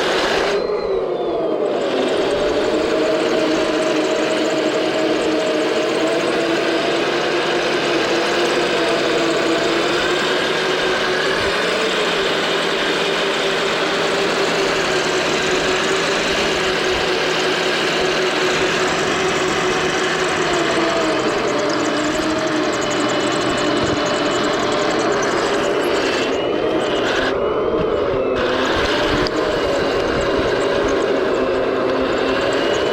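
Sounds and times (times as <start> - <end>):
toy tank motor whine: 0.0 - 32.9.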